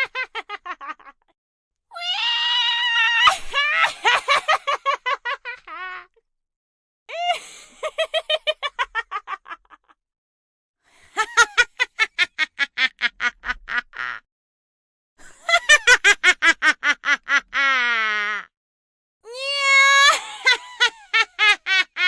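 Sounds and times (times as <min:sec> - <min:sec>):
witch cackling laugh: 0:00.0 - 0:01.3, 0:03.2 - 0:06.2, 0:07.1 - 0:10.0, 0:11.2 - 0:14.2, 0:15.2 - 0:18.5, 0:19.9 - 0:22.0.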